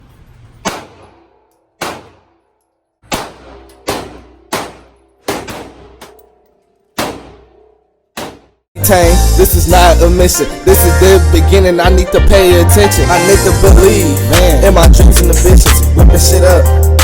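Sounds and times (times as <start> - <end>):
gunshots with ringing echo: 0.6 - 8.6.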